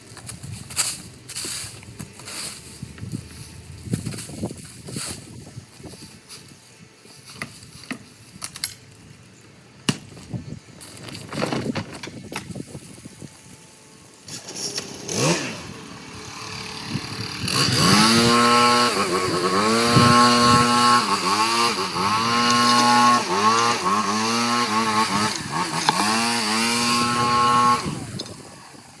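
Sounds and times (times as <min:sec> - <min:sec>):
leaf blower engine running: 0:13.1 - 0:29.0.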